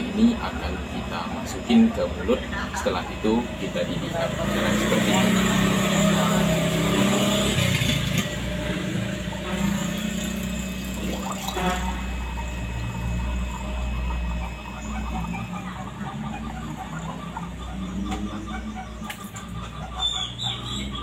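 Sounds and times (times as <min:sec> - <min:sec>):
steady low hum: 0:08.4 - 0:19.8
man gargling: 0:11.0 - 0:11.9.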